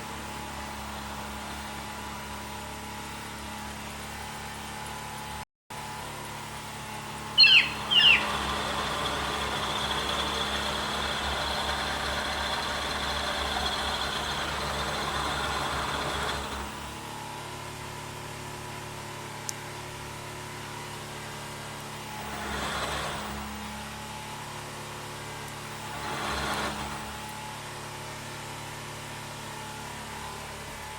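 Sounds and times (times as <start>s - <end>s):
loud machine screeches: 7.4s - 16.7s
milling machine humming: 7.6s - 17.0s.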